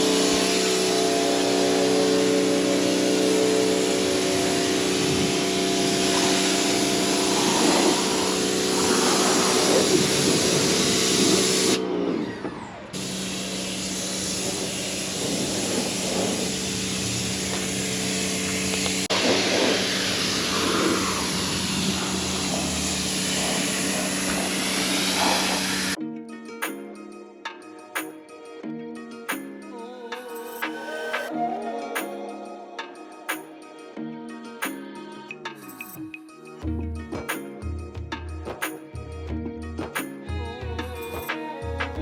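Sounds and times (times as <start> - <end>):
water spray hissing: 0.0 - 11.8, 13.0 - 26.0
pressure washer motor hum: 0.0 - 26.0.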